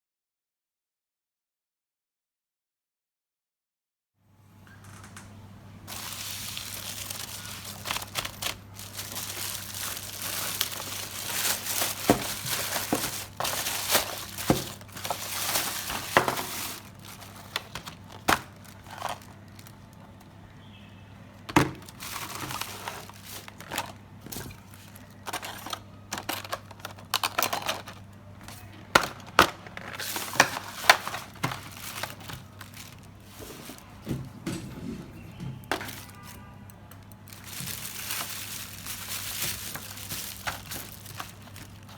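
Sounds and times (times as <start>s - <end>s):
packaging crinkling: 5.9s - 20.4s, 21.4s - 34.1s, 35.6s - 41.9s.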